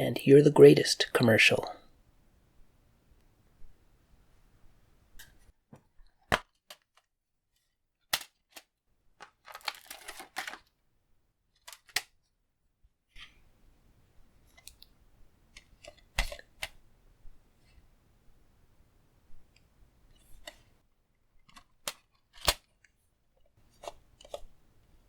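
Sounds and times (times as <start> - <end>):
plastic case rustling: 9.2 - 10.7
plastic case clicking and snapping: 11.6 - 12.1, 21.4 - 22.7.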